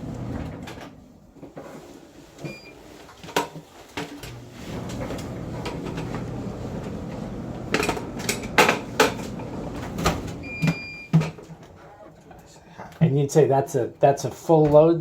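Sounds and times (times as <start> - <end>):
clothes dryer humming: 0.0 - 12.7.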